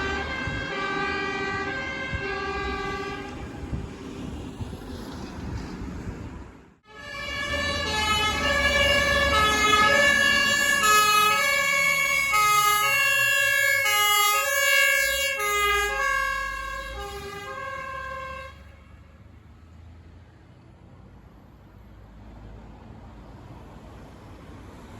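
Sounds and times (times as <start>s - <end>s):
two-tone siren horn: 0.0s - 3.6s, 6.8s - 19.0s.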